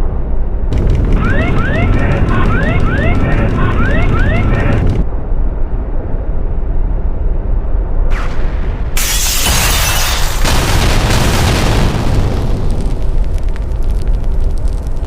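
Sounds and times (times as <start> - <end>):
heavy low rumble: 0.0 - 9.0
crash and explosion: 0.7 - 5.0, 8.1 - 15.0.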